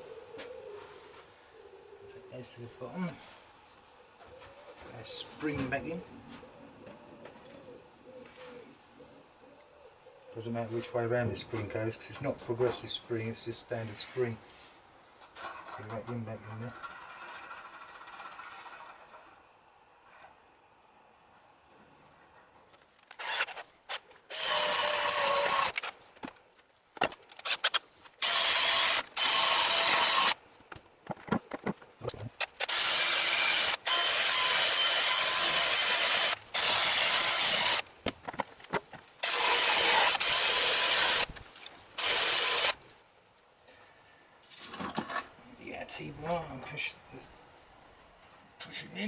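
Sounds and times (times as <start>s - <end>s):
handheld power tool grinding: 16.6s - 19.4s, 23.1s - 26.0s, 27.3s - 30.4s, 32.4s - 37.8s, 39.2s - 41.3s, 42.0s - 42.8s.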